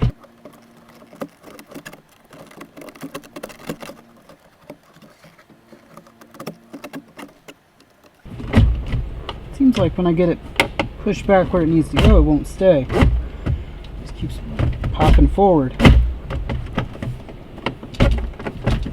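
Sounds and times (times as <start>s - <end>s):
faint hum: 8.3s - 18.9s.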